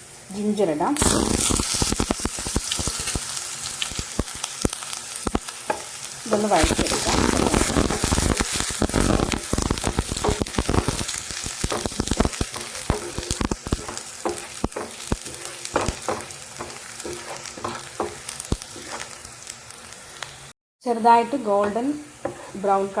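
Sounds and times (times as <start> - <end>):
garlic sizzling in hot oil: 0.0 - 23.0
spatula scraping a pan: 5.7 - 19.2, 21.6 - 22.9.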